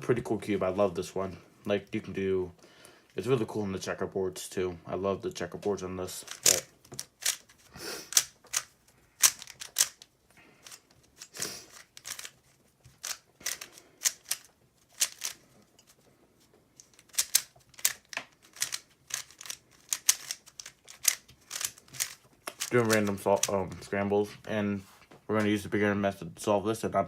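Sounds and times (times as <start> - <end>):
puzzle cube clicking and clacking: 6.1 - 16.0, 16.7 - 23.9.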